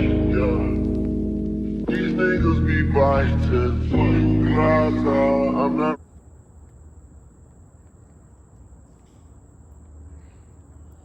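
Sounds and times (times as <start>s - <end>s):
low rumble: 0.0s - 6.0s.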